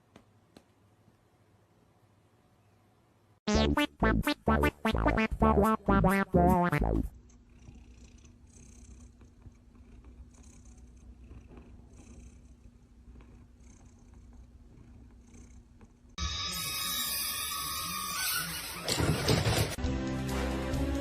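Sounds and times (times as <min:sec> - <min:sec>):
loud music: 0:03.5 - 0:07.1
cat purring: 0:07.1 - 0:16.2.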